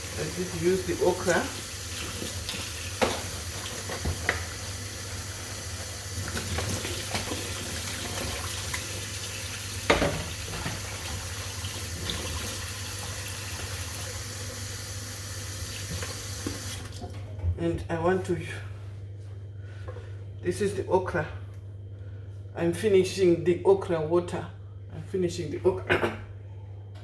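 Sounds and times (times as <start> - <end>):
tap water running into sink: 0.0 - 17.2
knocks of things in sink: 9.9 - 10.8.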